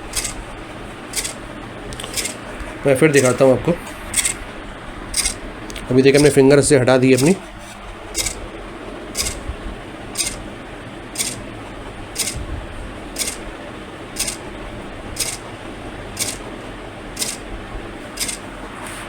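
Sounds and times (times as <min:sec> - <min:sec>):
sharp ticks: 0:00.0 - 0:00.4, 0:01.1 - 0:01.4, 0:02.0 - 0:02.4, 0:04.1 - 0:04.4, 0:05.1 - 0:05.4, 0:06.1 - 0:06.4, 0:07.2 - 0:07.4, 0:08.2 - 0:08.4, 0:09.2 - 0:09.4, 0:10.2 - 0:10.4, 0:11.2 - 0:11.4, 0:12.2 - 0:12.4, 0:13.2 - 0:13.4, 0:14.2 - 0:14.4, 0:15.2 - 0:15.4, 0:16.2 - 0:16.4, 0:17.2 - 0:17.5, 0:18.1 - 0:18.4.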